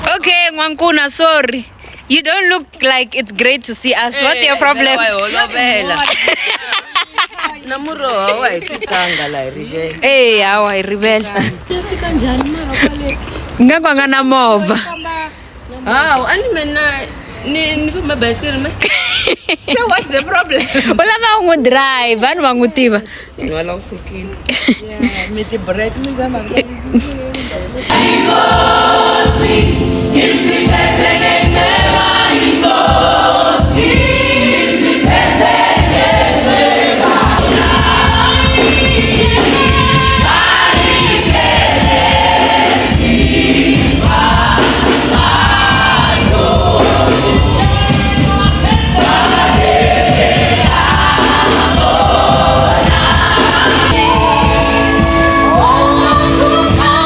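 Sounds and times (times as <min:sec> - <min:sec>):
choir singing over a beat: 0:27.9 - 0:57.0.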